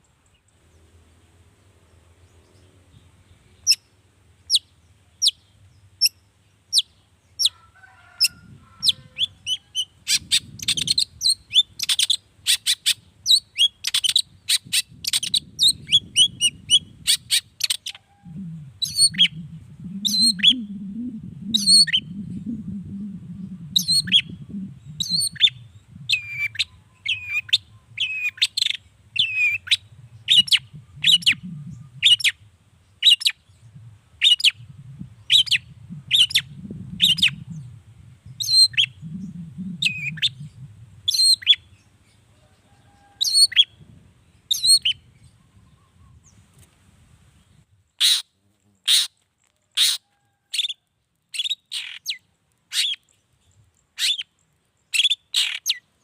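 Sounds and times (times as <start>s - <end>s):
bird chattering song: 8.8s - 42.2s, 44.4s - 46.4s, 49.8s - 55.9s
low rumbling noise: 18.2s - 26.2s, 29.8s - 32.8s, 33.5s - 41.1s.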